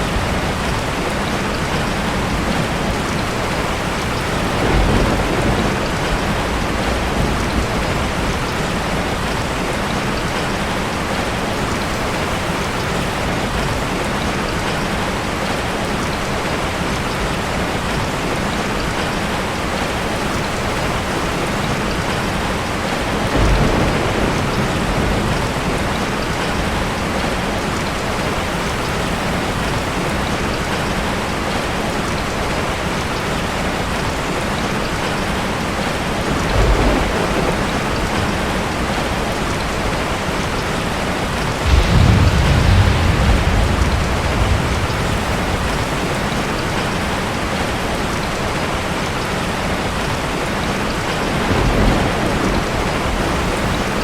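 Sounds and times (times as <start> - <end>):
thunder rumbling: 0.0 - 13.7, 19.8 - 30.0, 36.3 - 47.9, 51.2 - 54.0
heavy rain: 0.0 - 54.0.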